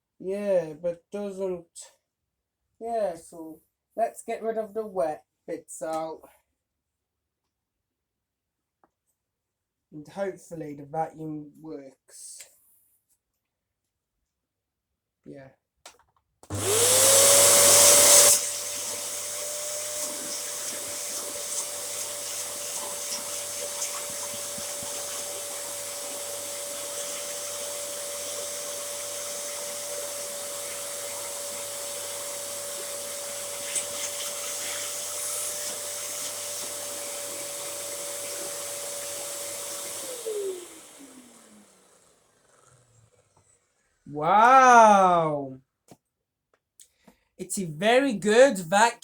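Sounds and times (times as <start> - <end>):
vacuum cleaner motor whine: 16.5 - 43.3.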